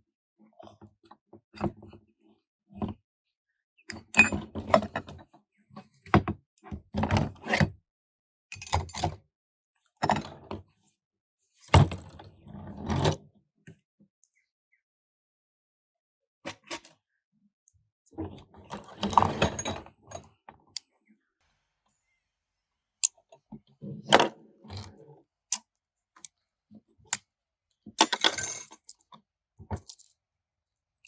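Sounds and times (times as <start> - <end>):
metal parts clanking and rattling: 19.0 - 20.2, 28.0 - 28.9.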